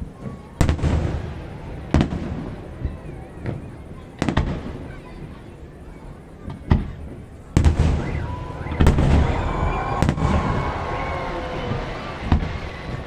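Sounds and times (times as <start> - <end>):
fireworks rumble and crackle: 0.0 - 13.0
fireworks loud bangs: 0.6 - 3.0, 6.7 - 13.0.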